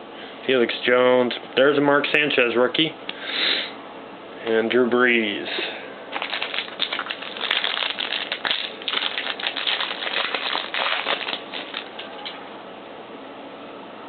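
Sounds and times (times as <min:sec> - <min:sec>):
card pack wrapper crinkling: 0:06.1 - 0:12.0.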